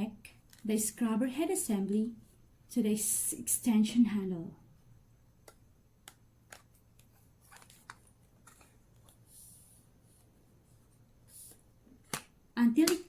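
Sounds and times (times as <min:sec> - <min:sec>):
soft rustle: 0:07.0 - 0:11.7.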